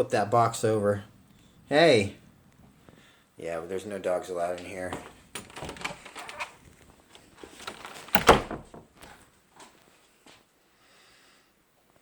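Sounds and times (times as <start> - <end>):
door shutting with thump: 8.1 - 8.9.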